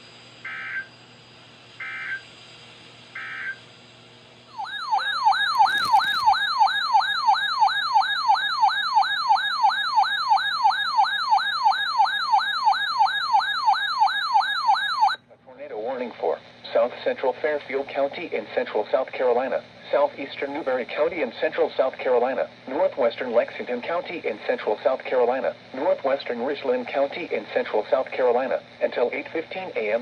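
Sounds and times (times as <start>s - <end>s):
alert siren sweeping up and down: 4.5s - 15.2s.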